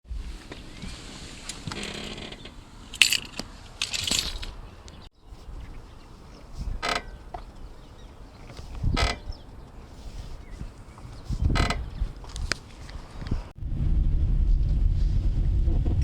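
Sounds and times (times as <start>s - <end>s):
car suspension creaking: 1.5s - 13.6s.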